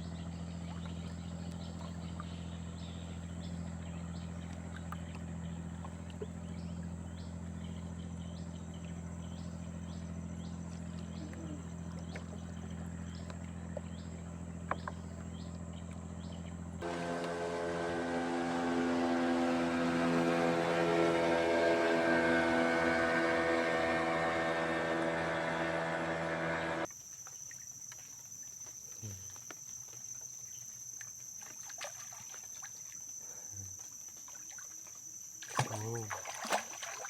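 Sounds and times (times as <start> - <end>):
small engine humming: 0.2 - 26.9
louder engine speeding up: 16.8 - 26.9.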